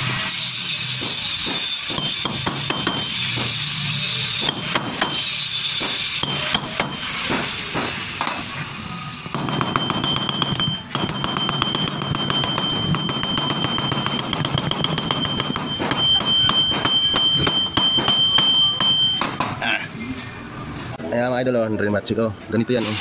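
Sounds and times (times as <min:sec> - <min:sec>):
hammer tapping steel rivet: 0:04.4 - 0:08.4, 0:09.4 - 0:19.5.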